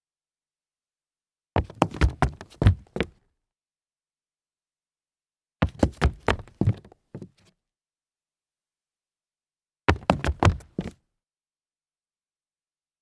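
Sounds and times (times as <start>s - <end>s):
hard shoes stumbling on concrete: 9.9s - 11.0s.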